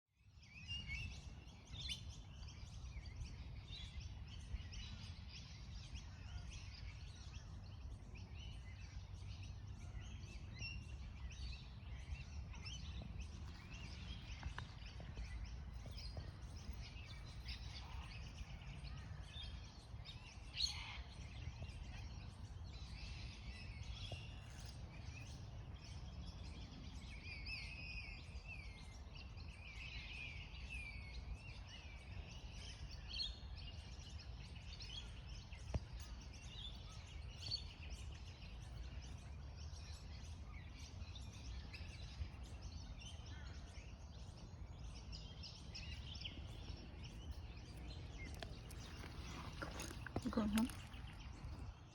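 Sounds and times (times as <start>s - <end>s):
small birds chirping: 0.2s - 51.9s.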